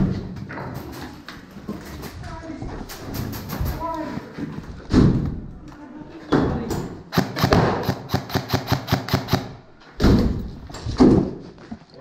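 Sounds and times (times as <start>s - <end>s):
airsoft gun shots: 7.1s - 10.4s.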